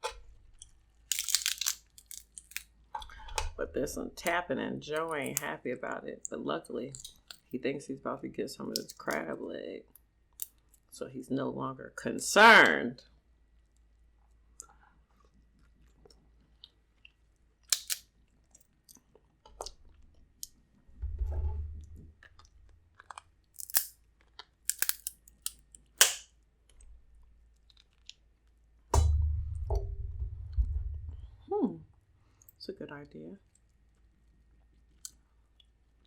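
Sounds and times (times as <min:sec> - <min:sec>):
crab shell cracking: 0:00.6 - 0:02.7, 0:05.0 - 0:05.5, 0:06.9 - 0:07.5, 0:08.7 - 0:09.2, 0:17.6 - 0:18.1, 0:23.1 - 0:26.3
chewing: 0:00.6 - 0:03.3, 0:06.9 - 0:07.4, 0:08.8 - 0:09.2, 0:22.3 - 0:25.6
low dull bump: 0:20.9 - 0:22.8, 0:29.0 - 0:32.3.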